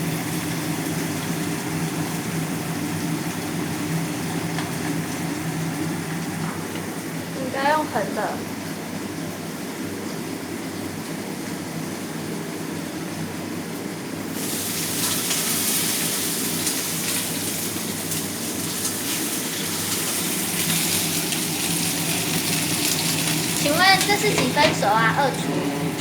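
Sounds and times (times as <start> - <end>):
range hood fan running: 0.0 - 26.0
steak sizzling in a hot pan: 14.4 - 25.4.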